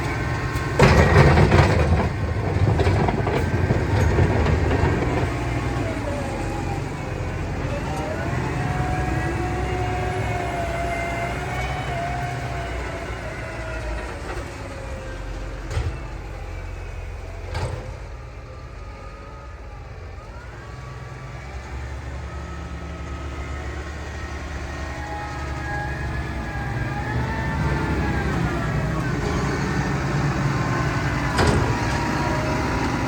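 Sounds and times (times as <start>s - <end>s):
tractor engine running: 0.0s - 19.7s, 21.2s - 33.0s.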